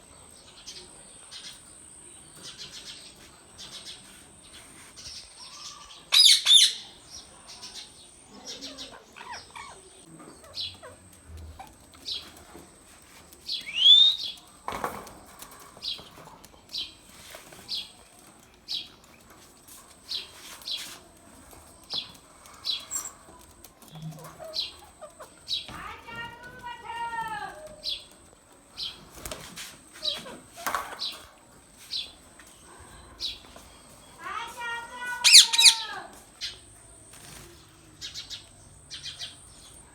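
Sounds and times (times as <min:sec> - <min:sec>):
parakeet calling: 0:06.1 - 0:07.0, 0:34.4 - 0:36.0.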